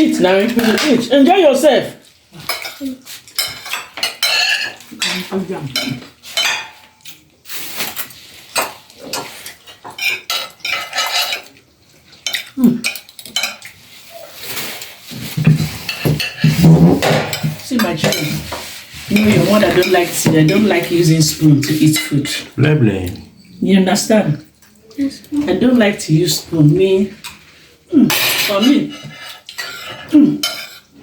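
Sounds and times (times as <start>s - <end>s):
spoons clinking against plates: 2.4s - 7.2s, 8.5s - 13.8s, 14.8s - 22.4s, 28.1s - 31.0s.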